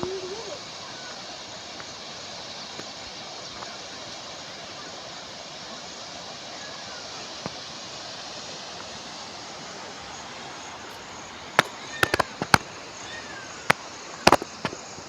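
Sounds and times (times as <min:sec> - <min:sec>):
sharp cracks or pops: 0:10.9 - 0:12.8, 0:13.7 - 0:15.0.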